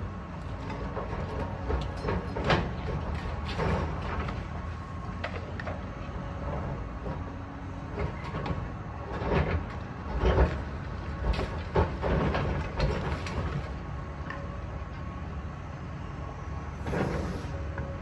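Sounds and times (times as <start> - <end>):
demolition machinery rumble: 0.0 - 18.0
clanks and knocks: 8.0 - 13.7.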